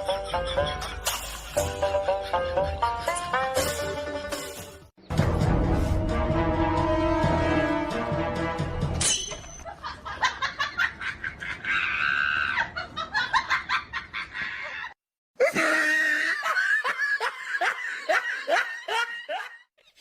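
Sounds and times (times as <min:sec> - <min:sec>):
person laughing: 0:00.0 - 0:03.2, 0:09.6 - 0:20.0.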